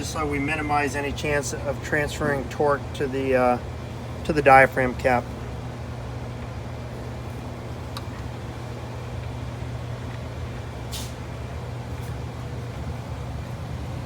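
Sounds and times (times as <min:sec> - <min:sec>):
low background hum: 0:00.0 - 0:14.0
short hiss: 0:10.9 - 0:11.2.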